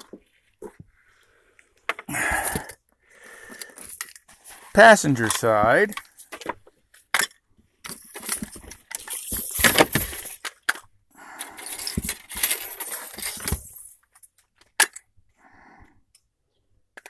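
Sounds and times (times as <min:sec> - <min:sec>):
small metal parts jangling: 0:07.2 - 0:10.8, 0:11.4 - 0:14.9.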